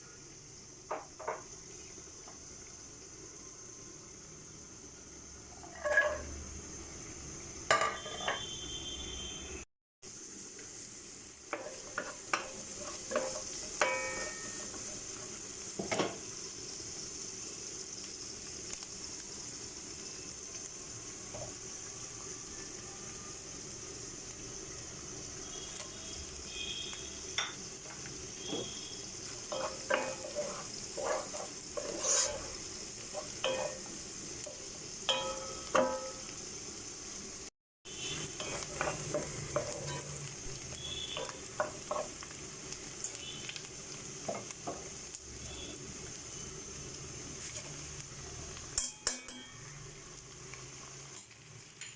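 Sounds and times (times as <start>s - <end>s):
food sizzling in oil: 0.0s - 51.9s
metal spoon scraping a pot: 5.6s - 6.3s, 29.5s - 32.6s.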